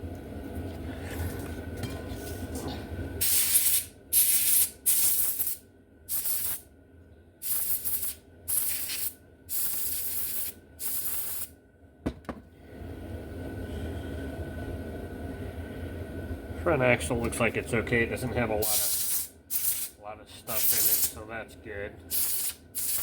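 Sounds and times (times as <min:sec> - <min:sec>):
hissing spray bursts: 0:03.2 - 0:06.6, 0:07.4 - 0:11.5, 0:18.6 - 0:21.2, 0:22.1 - 0:23.0.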